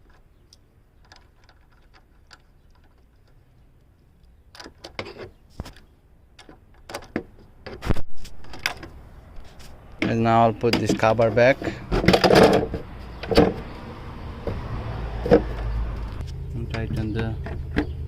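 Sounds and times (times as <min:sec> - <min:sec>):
metal knocks: 0:10.0 - 0:13.8, 0:15.2 - 0:15.8.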